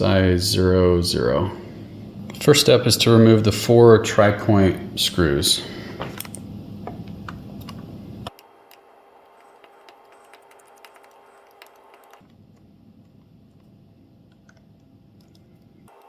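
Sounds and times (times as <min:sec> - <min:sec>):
loud low noise: 0:00.0 - 0:08.3.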